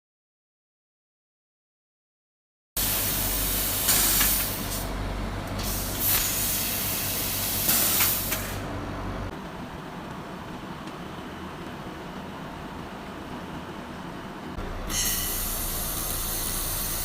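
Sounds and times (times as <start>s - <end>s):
gas hissing: 2.8s - 4.9s, 5.5s - 8.7s, 14.6s - 17.0s
welding machine hum: 2.8s - 9.2s, 14.6s - 17.0s.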